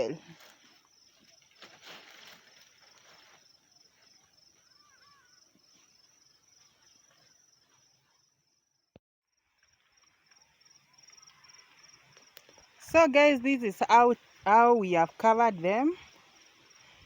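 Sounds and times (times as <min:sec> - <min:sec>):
faint insect chirring: 0:00.4 - 0:14.6.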